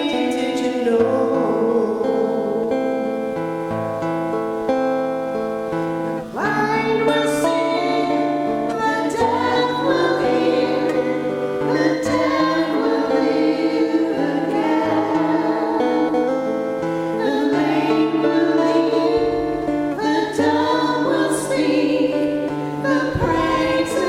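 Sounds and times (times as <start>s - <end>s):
people singing: 0.0s - 2.9s, 6.2s - 24.0s
acoustic guitar: 0.0s - 24.0s
sustained instrumental chords: 10.2s - 24.0s.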